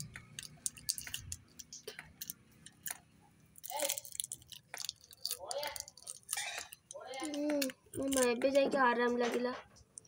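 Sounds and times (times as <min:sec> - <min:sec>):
child eating wet mouth clicks: 0:05.6 - 0:08.3.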